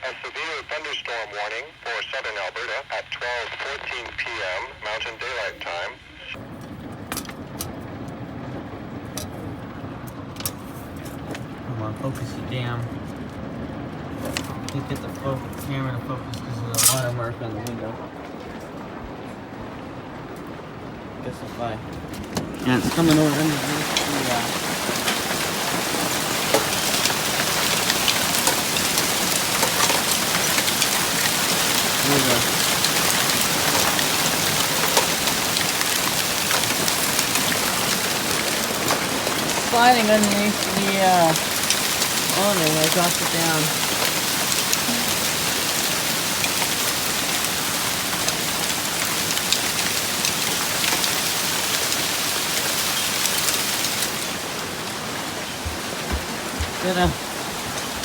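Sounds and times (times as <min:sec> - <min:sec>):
heavy rain and hail: 0:00.0 - 0:58.0.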